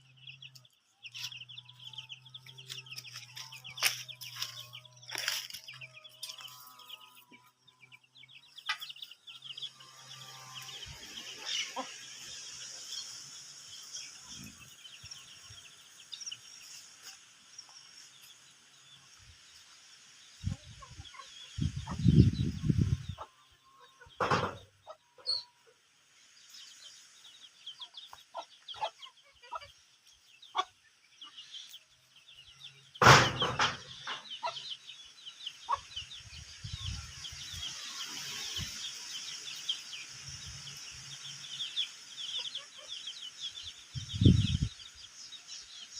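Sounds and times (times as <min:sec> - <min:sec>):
chickens clucking: 0:00.0 - 0:45.9
constant high chirping: 0:00.0 - 0:45.9
sharp knocks: 0:33.0 - 0:34.2.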